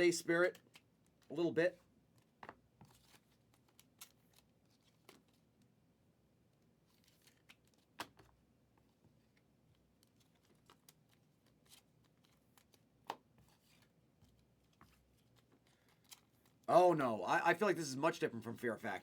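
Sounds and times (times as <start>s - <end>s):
cards sliding and rustling: 2.8s - 5.4s, 13.4s - 16.6s.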